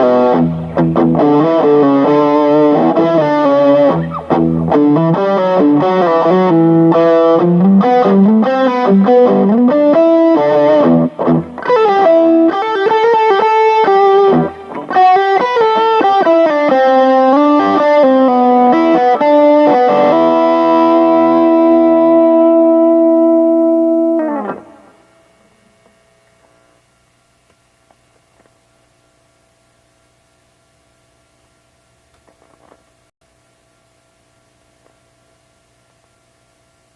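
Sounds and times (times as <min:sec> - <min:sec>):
distorted electric guitar: 0:00.0 - 0:25.9
faint amplifier hum: 0:00.0 - 0:36.9.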